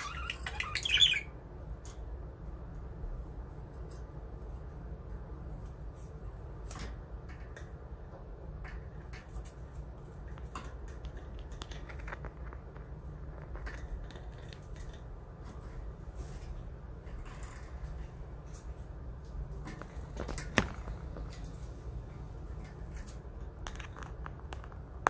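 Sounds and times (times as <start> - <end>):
steady low hum: 0.0 - 25.0
budgie claws and beaks tapping: 23.4 - 25.0.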